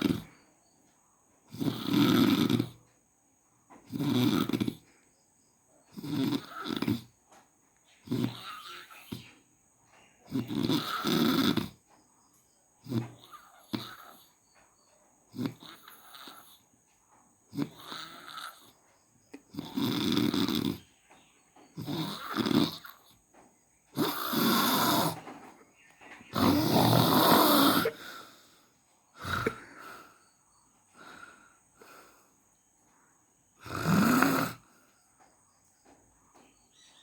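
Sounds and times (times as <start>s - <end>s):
person snoring: 0.0s - 0.3s, 1.5s - 2.8s, 3.9s - 4.9s, 5.9s - 7.1s, 8.0s - 9.3s, 10.3s - 11.8s, 12.8s - 14.3s, 15.3s - 16.6s, 17.5s - 18.8s, 19.5s - 20.9s, 21.8s - 23.2s, 24.0s - 25.2s, 26.3s - 30.2s, 30.9s - 32.3s, 33.6s - 34.8s.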